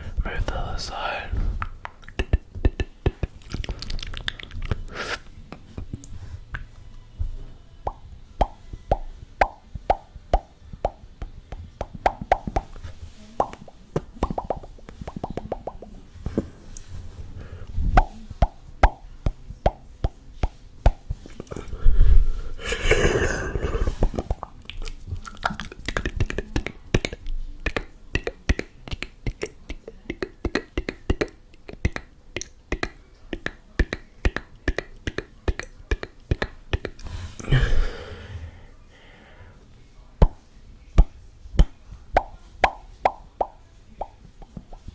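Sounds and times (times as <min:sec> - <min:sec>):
wet mouth clicks and smacks: 0:01.6 - 0:05.2, 0:07.9 - 0:15.9, 0:24.1 - 0:37.0.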